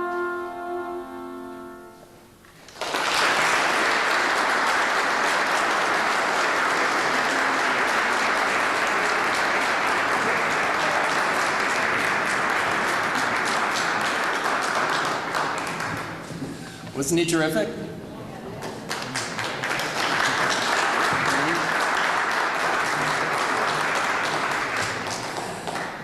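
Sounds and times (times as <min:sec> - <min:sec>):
instrumental solo with accompaniment: 0:00.0 - 0:02.5
audience applause: 0:02.6 - 0:16.9, 0:18.6 - 0:26.0.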